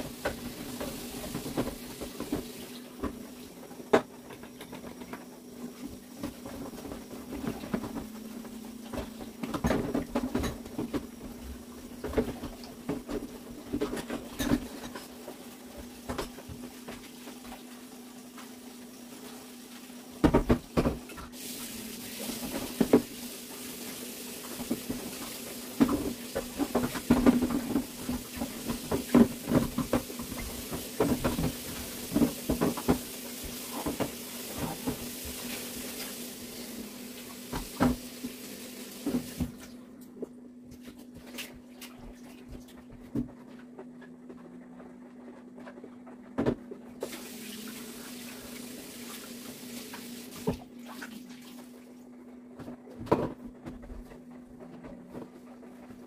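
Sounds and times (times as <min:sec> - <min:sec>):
tap water running: 0:00.0 - 0:39.8, 0:47.0 - 0:52.0.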